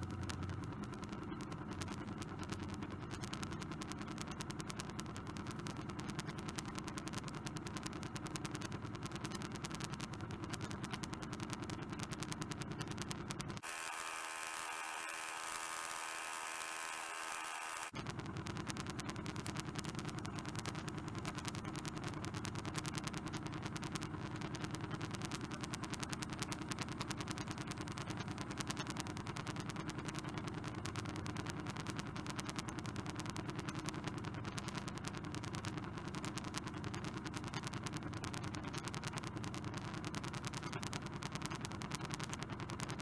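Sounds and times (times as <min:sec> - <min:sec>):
engine running: 0:13.6 - 0:17.9.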